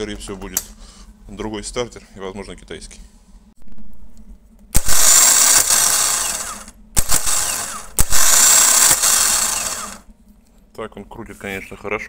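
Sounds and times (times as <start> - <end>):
starter motor spinning: 4.8 - 10.0.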